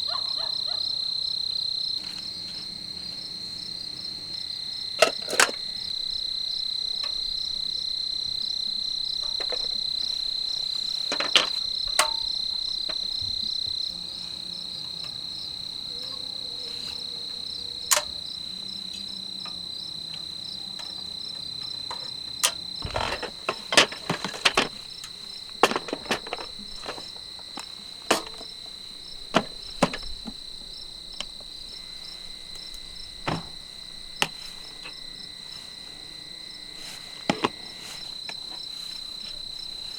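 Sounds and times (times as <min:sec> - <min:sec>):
high insect chorus: 0:00.0 - 0:39.9
sharp clicks and knocks: 0:21.9 - 0:28.6, 0:29.3 - 0:30.4.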